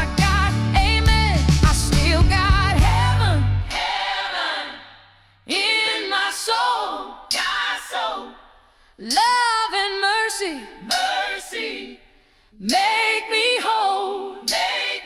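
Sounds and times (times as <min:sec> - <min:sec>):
deep bass groove: 0:00.0 - 0:03.8
wordless vocal with vibrato: 0:00.0 - 0:15.0.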